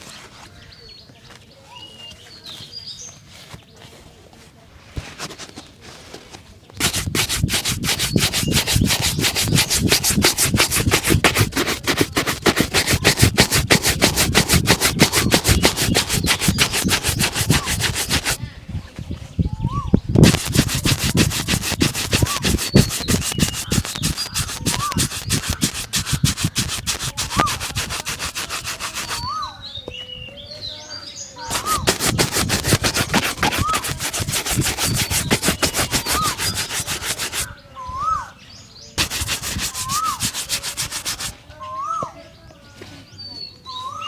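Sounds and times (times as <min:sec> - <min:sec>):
shoe being buffed: 0:06.8 - 0:18.4, 0:20.2 - 0:29.4, 0:31.5 - 0:37.5, 0:39.0 - 0:41.4.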